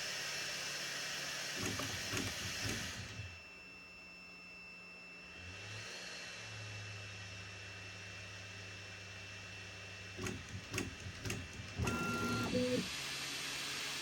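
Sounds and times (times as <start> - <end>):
printer fan hiss: 10.2 - 14.0.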